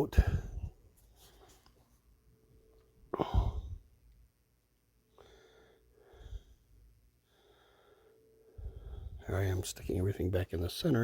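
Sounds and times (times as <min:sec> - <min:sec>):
soft breaths: 0:00.0 - 0:02.1, 0:03.1 - 0:04.1, 0:05.0 - 0:10.0.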